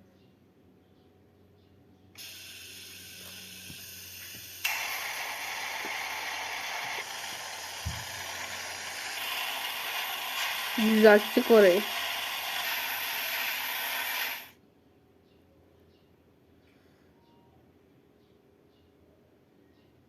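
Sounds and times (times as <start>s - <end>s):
compressed air hissing: 2.2s - 14.5s.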